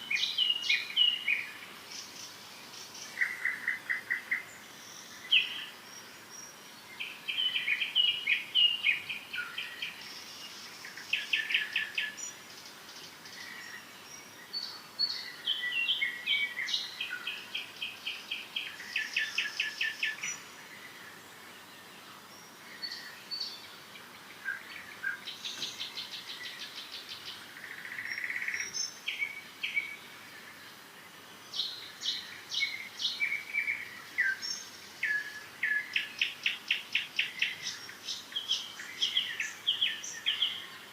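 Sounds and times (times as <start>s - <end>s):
songbirds chirping and trilling: 0.0s - 40.9s.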